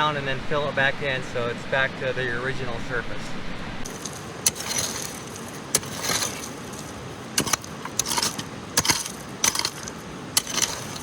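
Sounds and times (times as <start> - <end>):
metal tools scraping gravel: 3.9 - 11.0.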